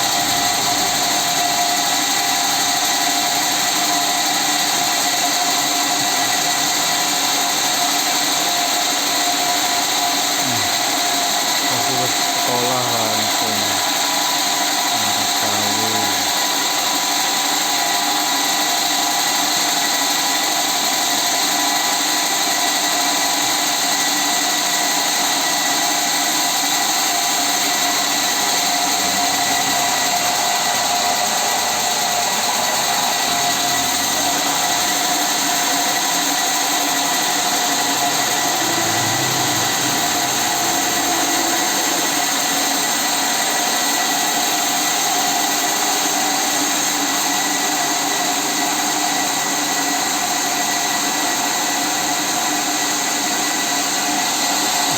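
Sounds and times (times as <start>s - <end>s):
power machine whining: 0.0s - 18.6s, 23.2s - 49.4s
high-pitched hum: 11.7s - 16.6s, 26.9s - 44.8s.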